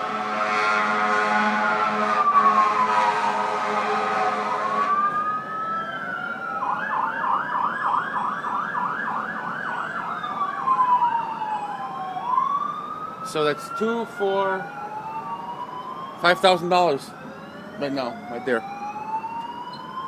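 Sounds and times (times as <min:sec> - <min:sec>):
blaring horn: 0:00.0 - 0:05.2
fire truck siren wailing: 0:00.0 - 0:20.0.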